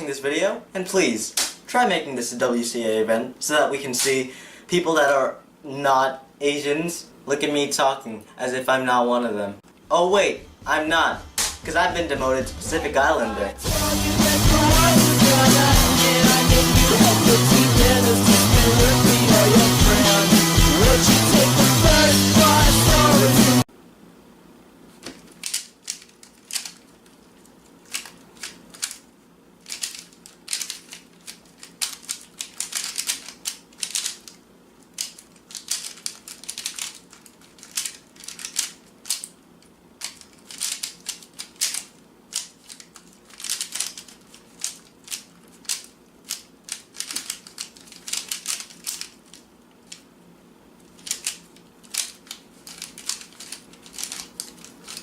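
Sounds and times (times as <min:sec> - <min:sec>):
puzzle cube plastic clicks: 0:25.1 - 0:27.2, 0:27.8 - 0:29.0, 0:29.6 - 0:50.0, 0:50.9 - 0:55.0.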